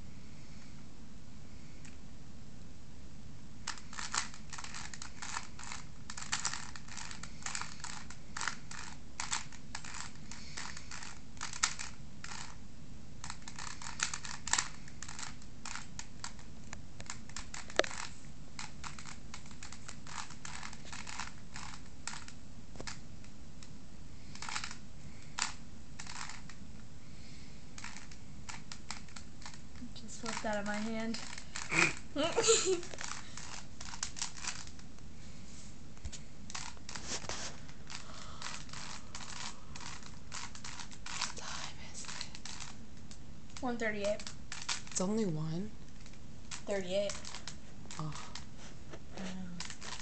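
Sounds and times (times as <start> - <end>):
puzzle cube plastic clicking: 3.6 - 12.6, 13.2 - 26.6, 27.8 - 34.9, 36.0 - 37.0, 37.6 - 45.1, 45.9 - 48.5, 49.6 - 50.0.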